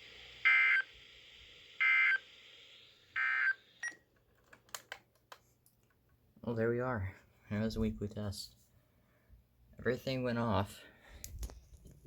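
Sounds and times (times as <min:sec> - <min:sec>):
steady radio hiss: 0:00.0 - 0:03.6.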